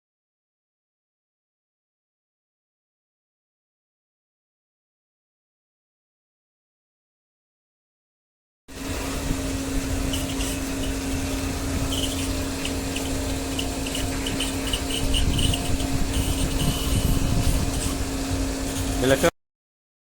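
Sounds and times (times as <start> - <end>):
electric motor humming: 8.7 - 19.3.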